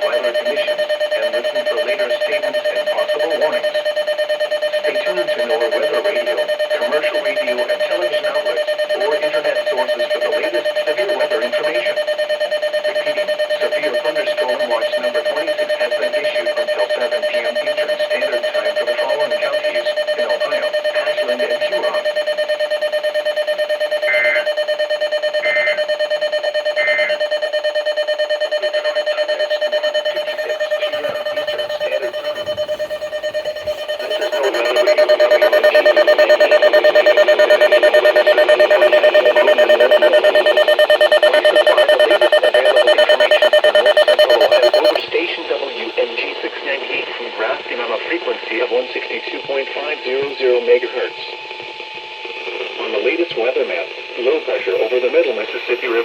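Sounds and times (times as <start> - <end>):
muffled voice-like audio: 0.0 - 3.7, 4.9 - 12.0, 12.9 - 22.0, 28.4 - 51.4, 52.3 - 56.0
short higher beeps: 28.9 - 45.0
electronic alert tone: 29.8 - 45.0.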